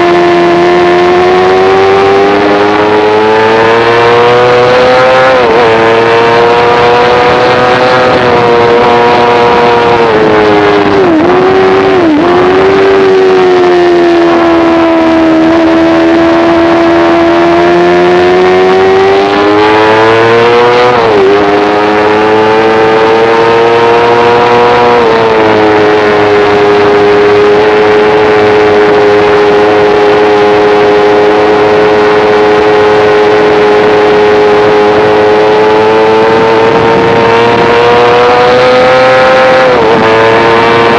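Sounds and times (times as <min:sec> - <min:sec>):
motorcycle engine at high revs: 0:00.0 - 0:40.9.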